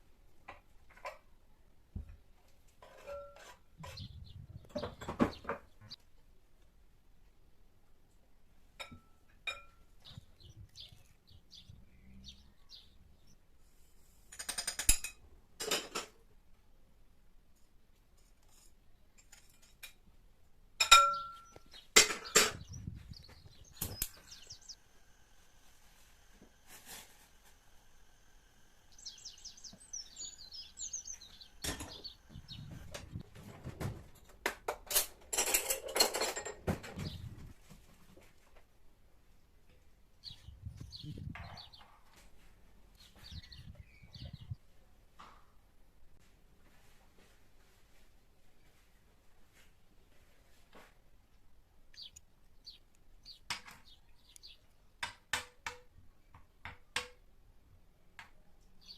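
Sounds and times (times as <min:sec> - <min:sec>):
dishes and utensils clattering: 0:02.8 - 0:04.1, 0:08.8 - 0:09.9, 0:14.3 - 0:16.2, 0:20.8 - 0:22.8, 0:31.5 - 0:33.8, 0:34.7 - 0:37.2
small bird chirping: 0:03.8 - 0:06.0, 0:09.9 - 0:13.4, 0:21.1 - 0:24.9, 0:28.3 - 0:33.2, 0:40.2 - 0:41.9, 0:42.9 - 0:44.6, 0:51.9 - 0:54.8.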